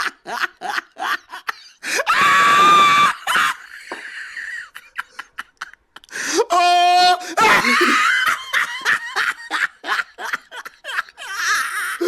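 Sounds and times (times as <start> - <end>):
person laughing: 7.5 - 8.0.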